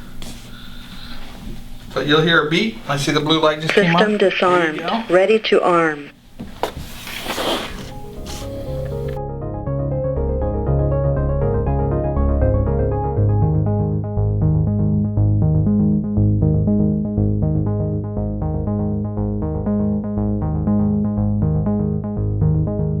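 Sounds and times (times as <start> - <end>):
upbeat synthesizer music: 7.9 - 23.0.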